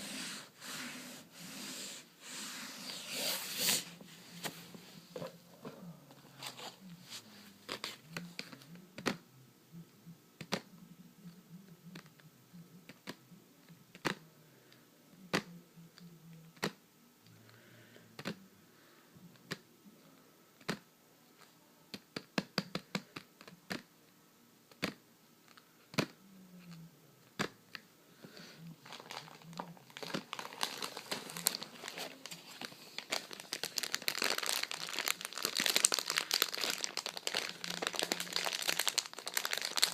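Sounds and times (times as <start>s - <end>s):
crinkling and handling noise: 0.0s - 9.2s, 24.7s - 39.9s.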